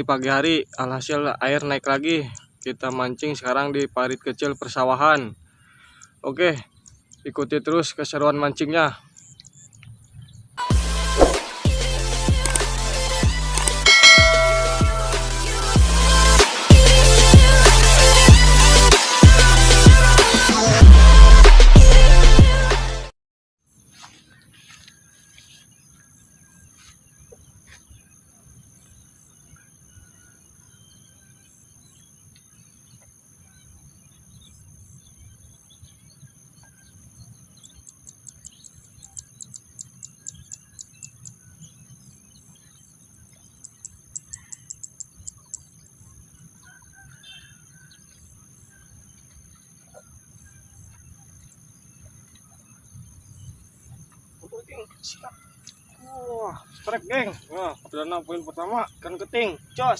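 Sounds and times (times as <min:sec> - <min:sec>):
bird chirps: 0:00.7 - 0:10.5, 0:13.9 - 0:15.3, 0:23.9 - 0:59.9
high insect drone: 0:23.8 - 0:59.9.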